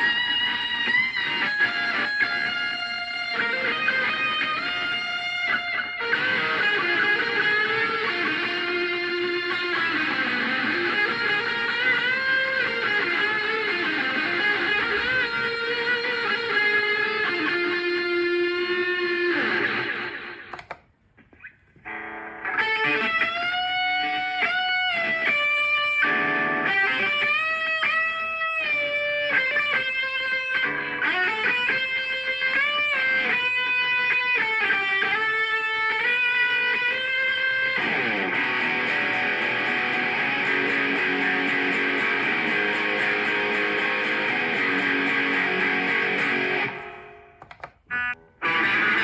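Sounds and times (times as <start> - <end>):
electric guitar lead line: 0.0 - 20.8, 21.8 - 49.0
pulsing guitar chord: 37.4 - 47.4, 48.0 - 49.0.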